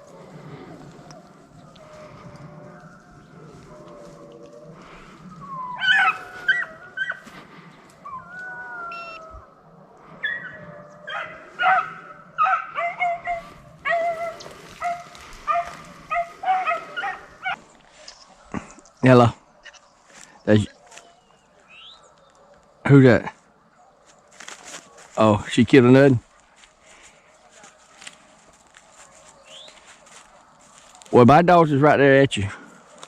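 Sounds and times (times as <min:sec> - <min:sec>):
hounds yelping barks: 0:00.0 - 0:18.5, 0:19.4 - 0:25.1, 0:32.5 - 0:33.0
hounds bawling: 0:00.0 - 0:25.2.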